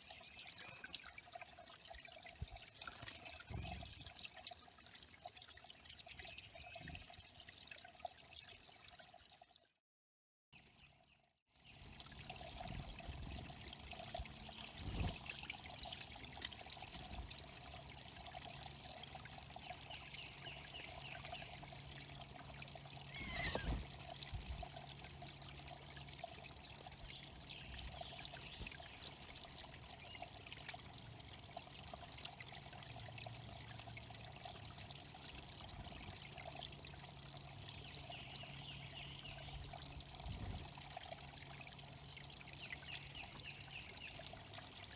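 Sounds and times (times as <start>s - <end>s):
water trickling into a pond: 0.0s - 9.8s, 10.5s - 44.9s.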